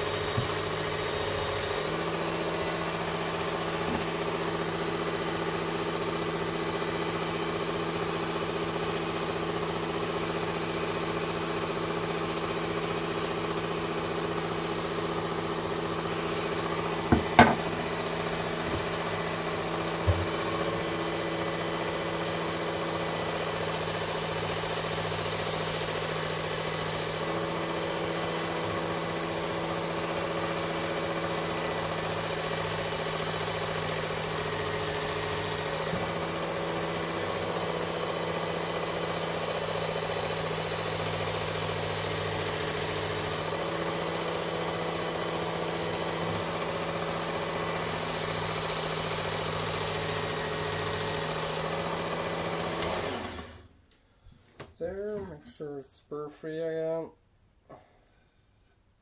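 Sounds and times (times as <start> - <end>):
motor hum: 15.2 - 21.2.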